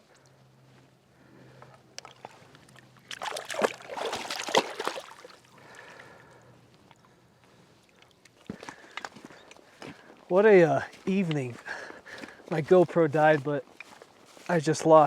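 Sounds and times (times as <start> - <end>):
river water splashing: 1.9 - 6.1.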